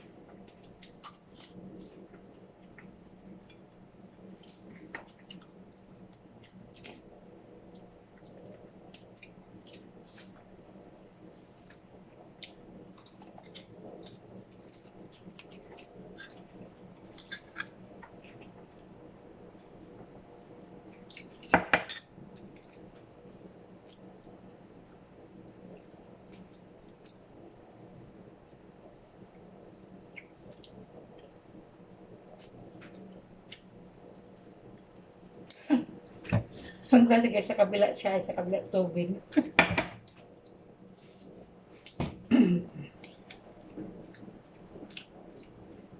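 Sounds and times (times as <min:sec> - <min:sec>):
steady low hum: 0:00.0 - 0:45.9
chewing and mouth clicks: 0:04.9 - 0:07.1, 0:11.6 - 0:18.5, 0:21.0 - 0:21.5, 0:43.0 - 0:45.6.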